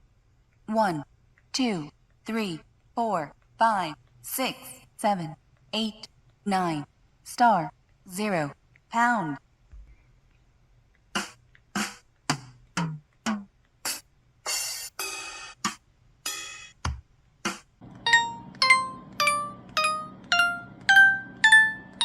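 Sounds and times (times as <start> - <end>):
short drum-like hits: 13.9 - 17.8
climbing chime notes: 18.0 - 22.0.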